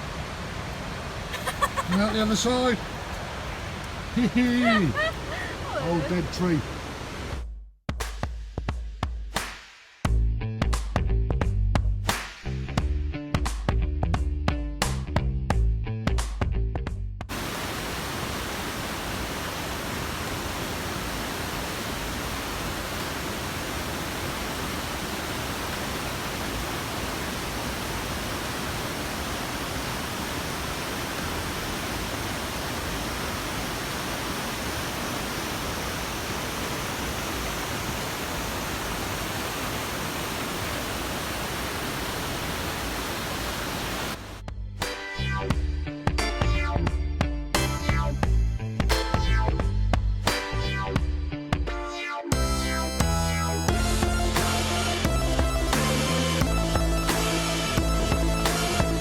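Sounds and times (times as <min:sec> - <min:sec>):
waterfall rushing: 0:00.0 - 0:07.4, 0:17.3 - 0:44.4
music: 0:07.6 - 0:17.3, 0:44.4 - 0:59.0.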